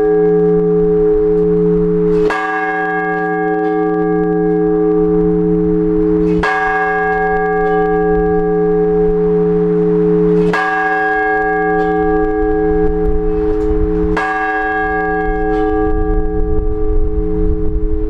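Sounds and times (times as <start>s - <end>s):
large church bell striking: 0.0s - 18.0s.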